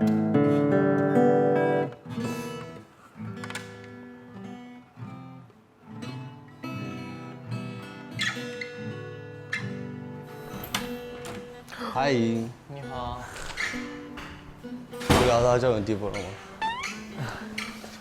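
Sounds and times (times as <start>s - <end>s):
acoustic guitar strumming: 0.0s - 11.7s.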